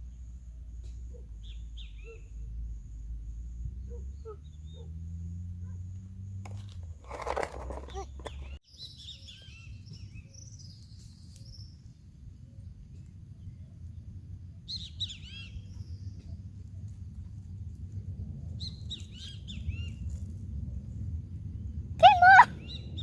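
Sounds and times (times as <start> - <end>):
small birds chirping: 0.0 - 6.4, 7.9 - 17.2, 18.6 - 20.2, 22.0 - 23.0
steady low rumble: 9.6 - 23.0.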